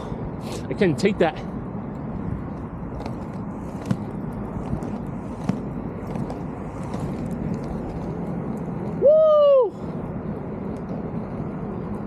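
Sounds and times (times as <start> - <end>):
wind buffeting microphone: 0.0 - 12.0
inline skate wheels rolling: 1.8 - 12.0
wheels clicking on grit: 1.9 - 9.0.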